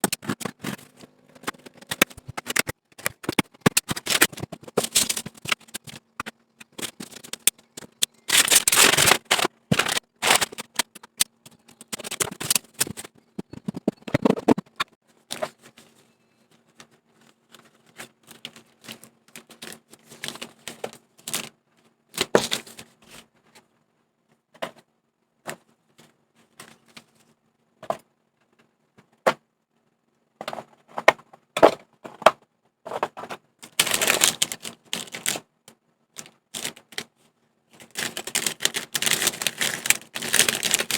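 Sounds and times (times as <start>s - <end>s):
packaging rustling: 0.0s - 14.5s, 33.6s - 35.4s, 36.2s - 37.0s, 37.8s - 40.9s.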